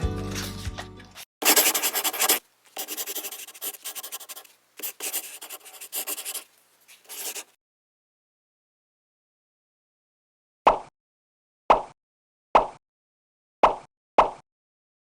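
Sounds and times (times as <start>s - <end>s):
pen scratching on paper: 1.4s - 7.5s.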